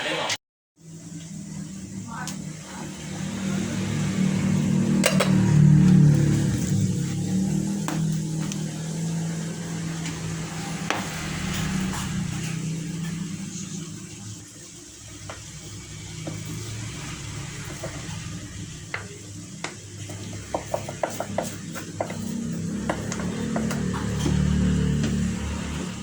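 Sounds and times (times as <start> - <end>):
cookware clicking and clinking: 5.0 - 5.5
low engine hum: 22.2 - 26.0.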